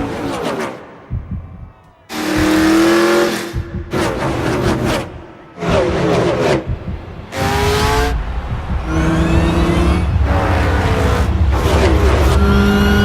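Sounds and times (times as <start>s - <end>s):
race car engines revving past: 2.1s - 13.0s
steady low rumble: 3.5s - 4.0s, 4.6s - 13.0s.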